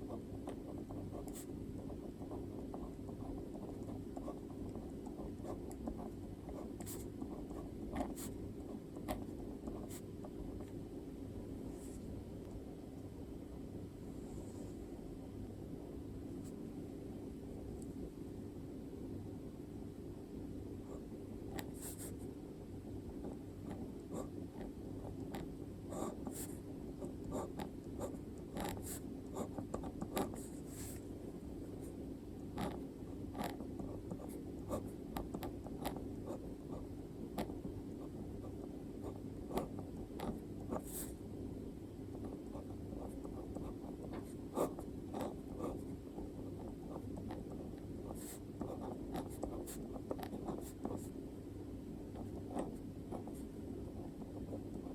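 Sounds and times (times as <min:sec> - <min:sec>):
pen scratching on paper: 0:00.0 - 0:10.8, 0:20.9 - 0:22.2, 0:23.2 - 0:31.0, 0:32.5 - 0:41.2, 0:42.2 - 0:51.2, 0:52.1 - 0:54.9
low background hum: 0:00.0 - 0:54.9.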